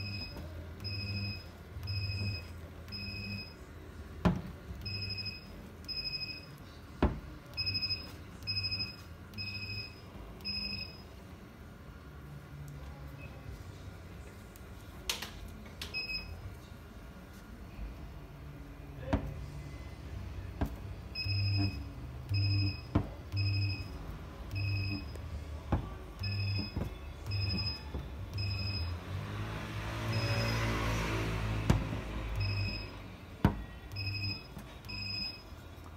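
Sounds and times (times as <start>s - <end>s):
short electronic beeps: 0.0s - 3.6s, 4.8s - 6.6s, 7.6s - 11.0s, 21.2s - 25.2s, 26.2s - 29.0s, 30.1s - 30.9s, 32.4s - 33.0s, 33.9s - 35.5s
low electrical hum: 0.0s - 30.2s.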